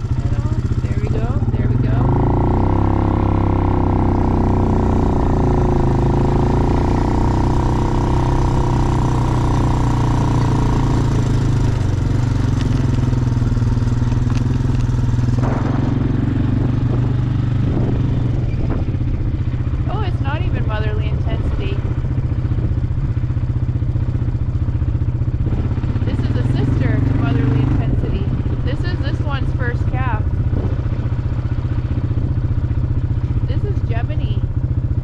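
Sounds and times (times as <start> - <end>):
engine droning: 0.0 - 35.0.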